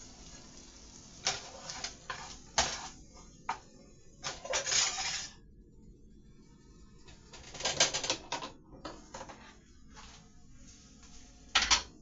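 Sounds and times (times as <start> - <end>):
scraping or rustling: 1.2 - 3.0, 4.2 - 5.4.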